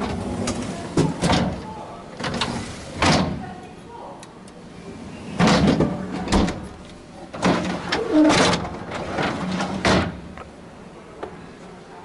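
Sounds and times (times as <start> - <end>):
appliance doors clunking and sliding: 0.0 - 3.6, 5.3 - 10.4.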